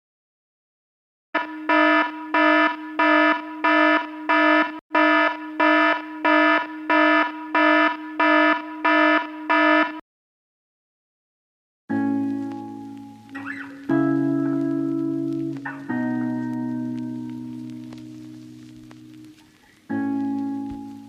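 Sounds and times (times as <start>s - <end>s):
alarm clock buzzing: 1.4s - 10.0s.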